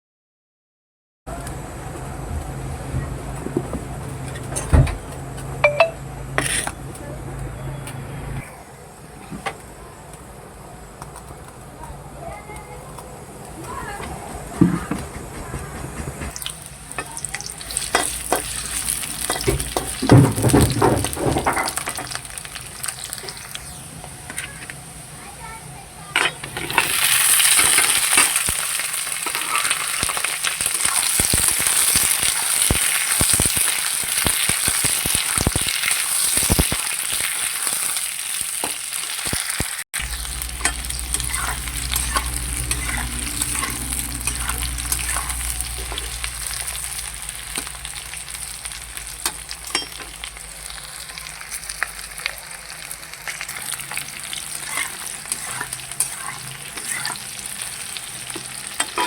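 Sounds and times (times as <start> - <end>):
spatula scraping pan: 6.4 - 6.8, 40.0 - 50.2, 53.7 - 59.0
food sizzling in hot oil: 16.3 - 59.0
low hum: 40.0 - 50.3.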